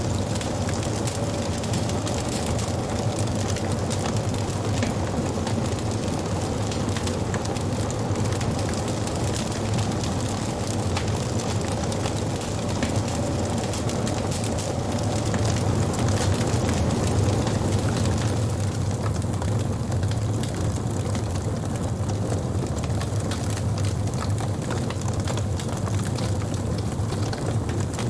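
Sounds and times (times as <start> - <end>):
wood fire crackling: 0.0 - 28.0.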